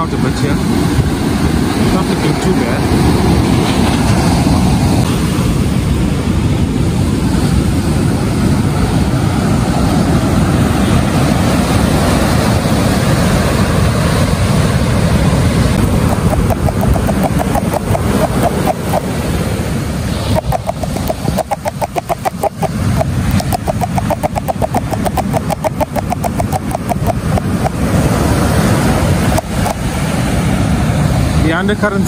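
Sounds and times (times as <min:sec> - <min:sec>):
surf and wind: 0:00.0 - 0:32.0
fast pulsing mid-pitched tone: 0:15.8 - 0:19.2, 0:20.2 - 0:28.4, 0:29.1 - 0:30.0.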